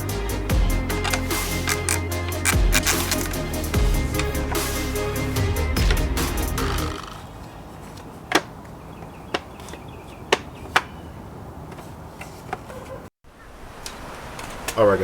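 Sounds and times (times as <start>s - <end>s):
background music: 0.0s - 7.2s.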